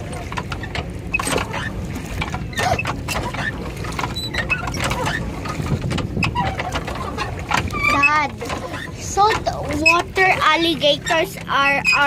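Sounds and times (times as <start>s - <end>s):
pedal drive clicking and rattling: 0.0s - 12.0s
steady low rumble: 0.0s - 12.0s.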